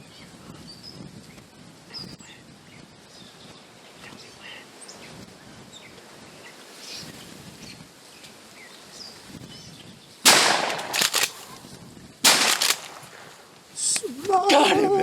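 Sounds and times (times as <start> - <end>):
shotgun shots echoing: 10.3 - 11.6, 12.2 - 13.4.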